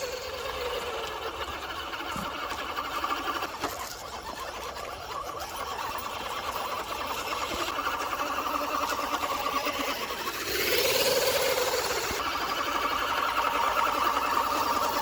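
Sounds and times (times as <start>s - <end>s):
rc truck motor whining: 0.0s - 15.0s.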